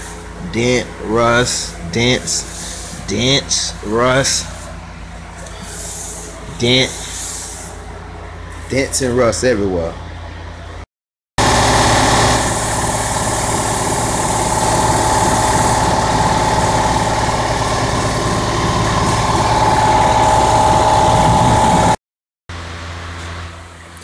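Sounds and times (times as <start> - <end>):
machine whining: 11.4 - 22.0.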